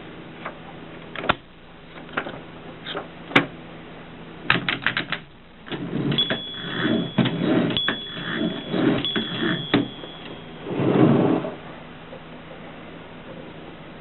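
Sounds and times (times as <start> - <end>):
typewriter sliding and rasping: 5.7 - 9.9.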